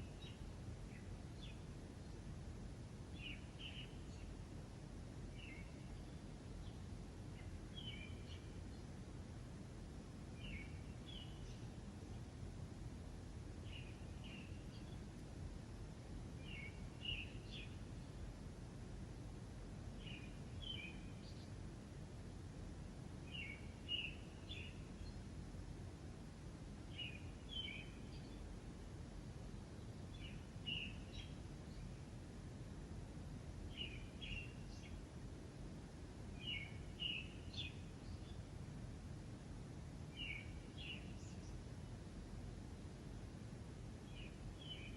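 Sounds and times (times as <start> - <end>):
songbird chirping: 0.0 - 18.7, 19.3 - 39.4, 40.0 - 44.9
low background rumble: 0.0 - 44.9
small bird chirping: 5.4 - 8.9, 10.4 - 12.3, 13.6 - 15.2, 16.3 - 18.2, 23.3 - 25.3, 30.1 - 32.2, 33.7 - 35.1, 36.4 - 38.4, 40.2 - 41.6.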